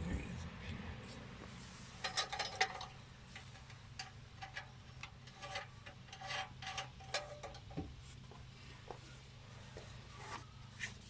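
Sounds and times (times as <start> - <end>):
metallic clicks and clinks: 2.0 - 7.8.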